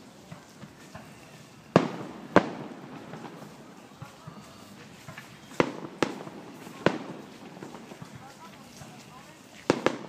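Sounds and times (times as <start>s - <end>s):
small firework pops: 0.1s - 10.0s
firework shells bursting: 0.6s - 3.8s.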